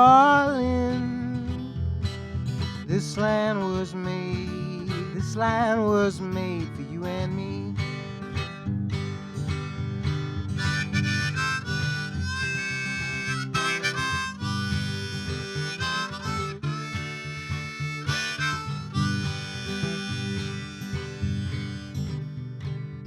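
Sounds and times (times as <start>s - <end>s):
strummed acoustic guitar: 0.0s - 23.0s
harmonica playing melody: 10.6s - 22.4s.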